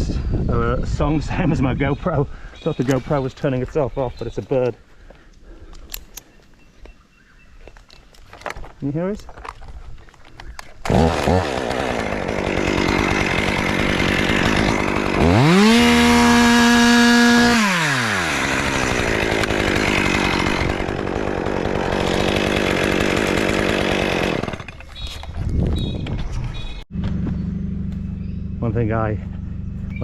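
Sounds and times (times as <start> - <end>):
chainsaw engine revving: 10.8 - 24.9
chainsaw cutting wood: 10.8 - 25.4.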